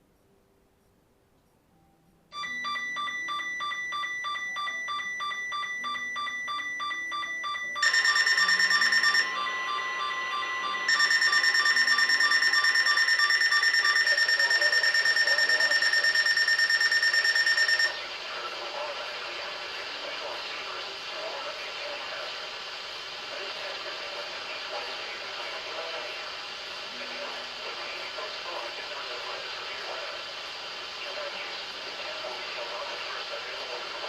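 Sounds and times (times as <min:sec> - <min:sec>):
pulsing electronic beep: 0:02.4 - 0:18.0
shrill pulsing alarm: 0:02.4 - 0:18.1.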